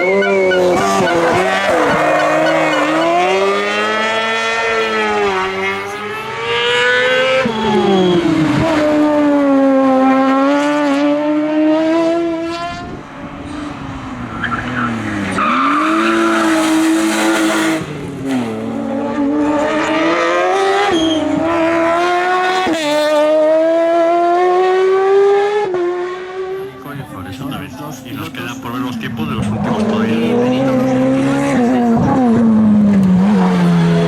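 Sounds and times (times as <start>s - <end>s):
tyres squealing: 0.0s - 3.8s, 13.5s - 18.4s
race car engine revving: 0.0s - 34.0s.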